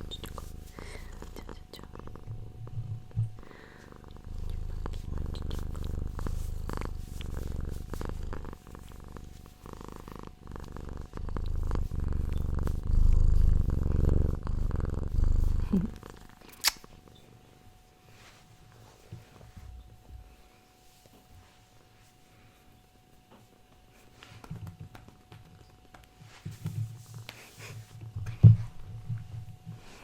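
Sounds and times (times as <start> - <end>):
cat purring: 0.0 - 18.2.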